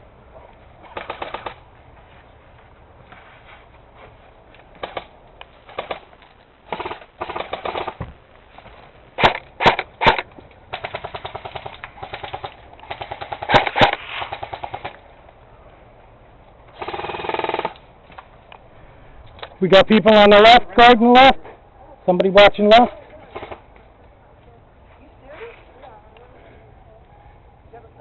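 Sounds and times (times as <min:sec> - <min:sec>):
airsoft guns firing bursts: 0:00.9 - 0:01.6, 0:06.7 - 0:08.1, 0:09.2 - 0:15.0, 0:16.8 - 0:17.8
sharp single gun cracks: 0:09.2 - 0:14.0.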